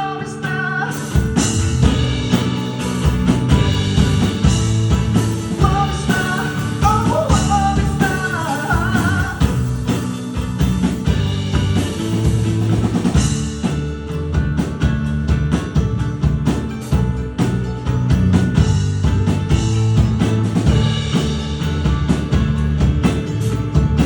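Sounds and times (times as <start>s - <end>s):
person singing: 0.0s - 1.4s, 5.4s - 9.6s
live rock band playing: 0.0s - 24.0s.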